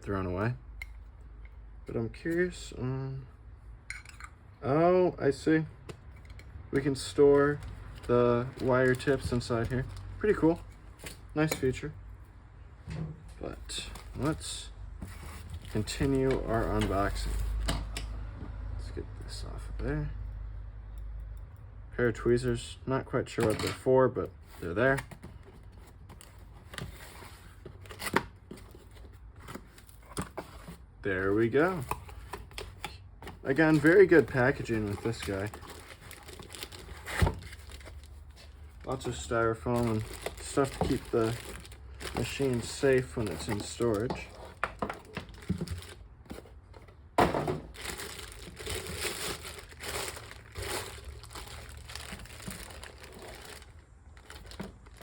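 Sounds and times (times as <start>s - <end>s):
packaging clicks and rustles: 6.8s - 11.7s, 15.0s - 18.0s, 24.6s - 47.0s, 47.6s - 55.0s
styrofoam rubbing and crinkling: 33.4s - 46.6s, 47.7s - 55.0s.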